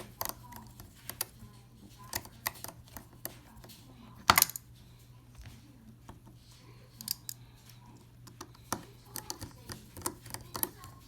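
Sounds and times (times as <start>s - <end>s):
screwdriver clicking on plastic: 0.0s - 1.4s, 2.0s - 4.6s, 8.2s - 11.0s
faint steady hum: 0.0s - 11.0s.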